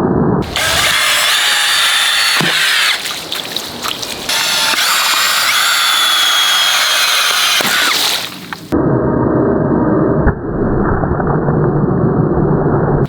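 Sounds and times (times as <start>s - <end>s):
small electric motor whining: 0.4s - 3.0s, 4.3s - 8.2s.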